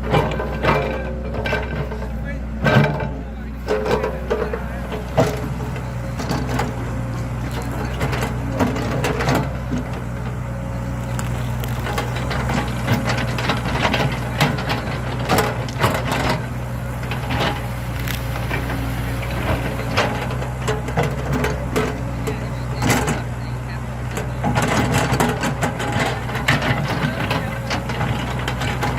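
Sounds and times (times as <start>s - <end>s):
excavator diesel engine running: 0.0s - 28.9s
wood cracking and crunching: 4.5s - 20.9s.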